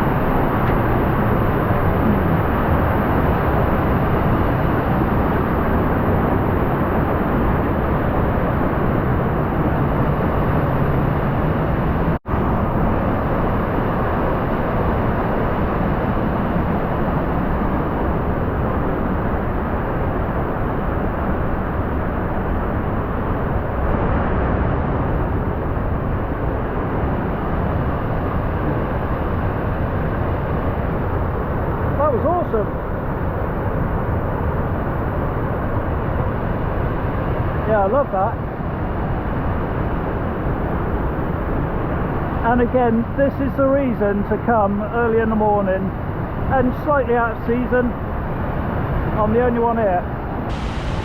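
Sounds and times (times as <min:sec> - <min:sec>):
waterfall rushing: 0:50.5 - 0:51.0.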